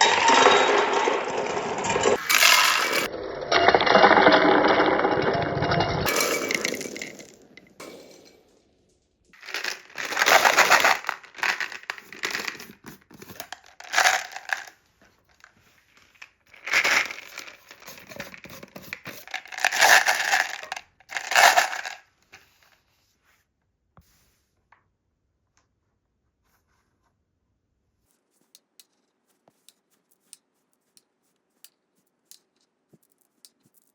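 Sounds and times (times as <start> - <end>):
marbles rattling down a wooden run: 0.0 - 7.4, 9.4 - 14.7, 16.5 - 22.0.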